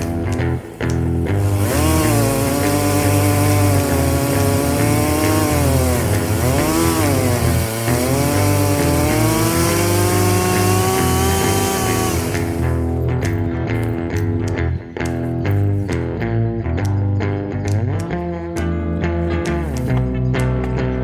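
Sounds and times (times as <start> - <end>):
chainsaw cutting log: 0.0 - 15.2.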